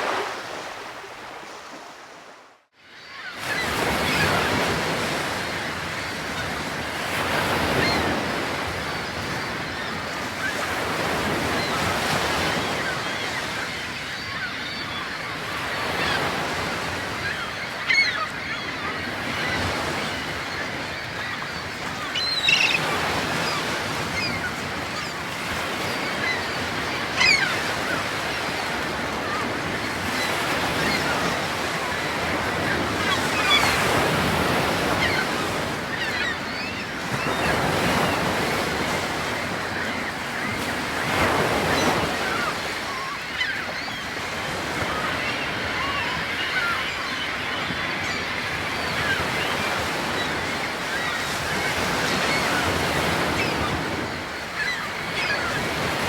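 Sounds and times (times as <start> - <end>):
ocean waves washing in: 0.0 - 2.6.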